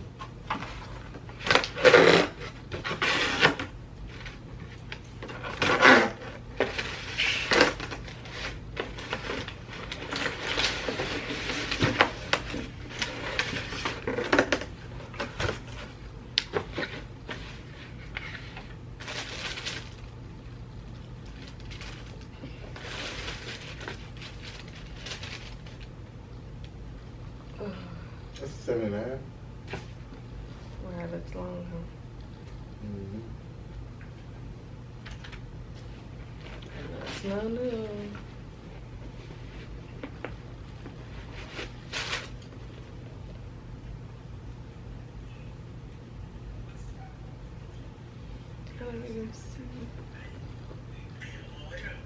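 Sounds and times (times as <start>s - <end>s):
packaging rustling: 6.6s - 20.2s, 21.2s - 26.0s, 41.2s - 42.6s.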